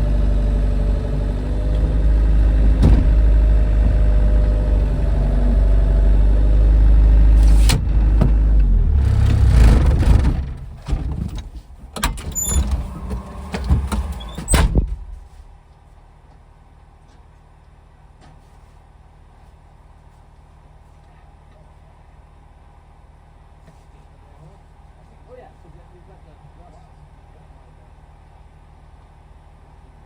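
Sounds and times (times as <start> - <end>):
tractor engine running: 0.0 - 15.4.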